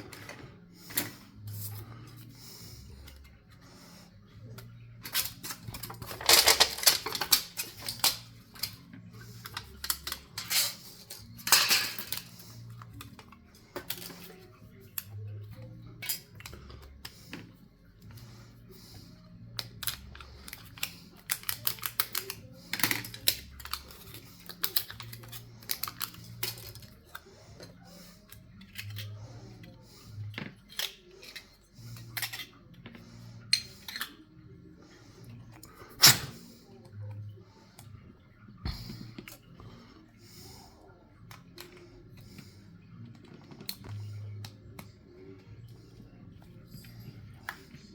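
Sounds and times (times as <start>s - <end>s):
small parts and tools clicking: 4.5s - 18.3s, 19.5s - 34.3s.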